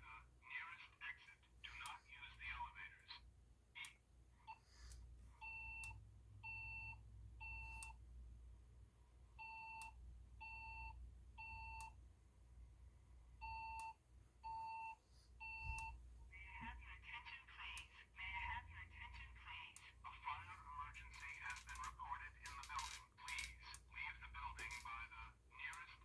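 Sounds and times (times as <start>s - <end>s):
faint fire alarm beeps: 3.8s - 16.8s.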